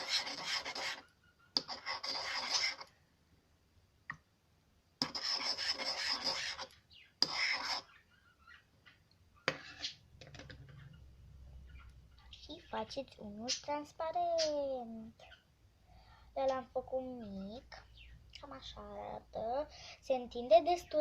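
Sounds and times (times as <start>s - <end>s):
slime being stirred in a bowl: 0.0s - 1.0s, 1.6s - 2.9s, 5.0s - 7.9s.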